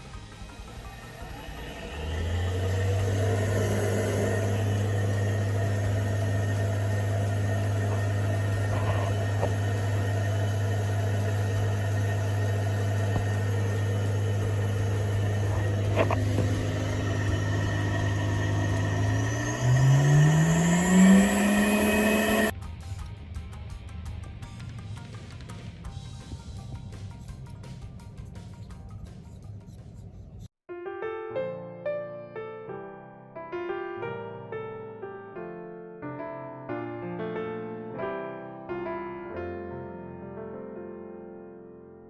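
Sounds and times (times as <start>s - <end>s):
washing machine motor humming: 0.0s - 22.5s.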